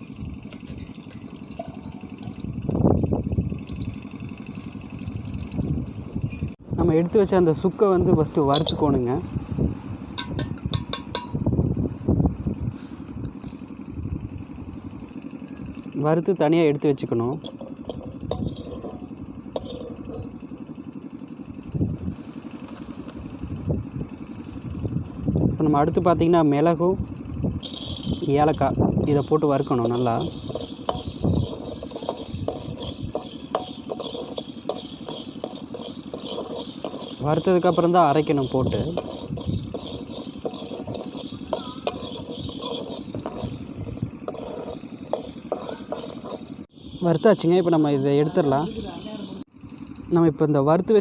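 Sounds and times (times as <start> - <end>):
low engine-like throb: 0.0 - 51.0
metal utensil scraping pan: 8.5 - 9.0, 17.2 - 20.6, 27.6 - 49.4.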